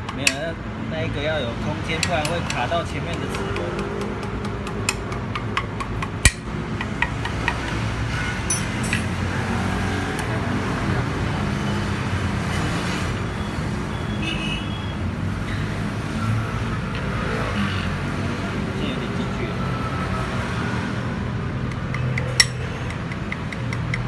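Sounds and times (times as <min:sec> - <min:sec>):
rumble of passing traffic: 0:00.0 - 0:24.0
light metal clinks: 0:08.5 - 0:09.2, 0:21.9 - 0:23.1.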